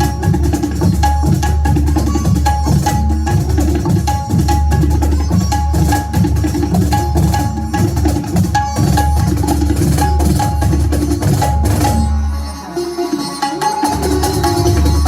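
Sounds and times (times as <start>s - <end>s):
tabla playing fast rhythm: 0.0s - 15.0s.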